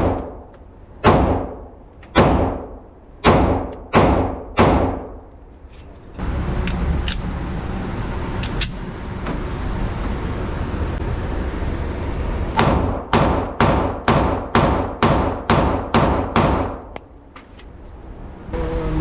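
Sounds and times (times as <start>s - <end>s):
gunshots with ringing tail: 1.0s - 5.2s.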